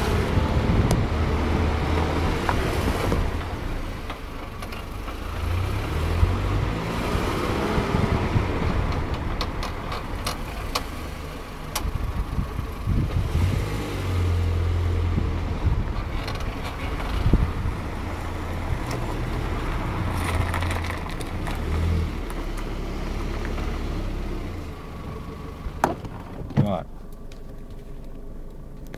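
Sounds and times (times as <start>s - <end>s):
car engine rumble: 0.0s - 28.9s.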